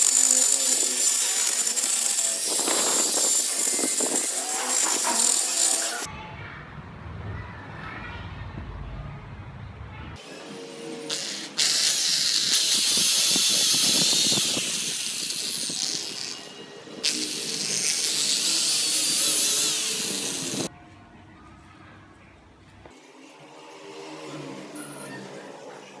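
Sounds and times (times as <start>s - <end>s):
rotary carving tool whining: 0.0s - 6.1s, 10.3s - 20.7s.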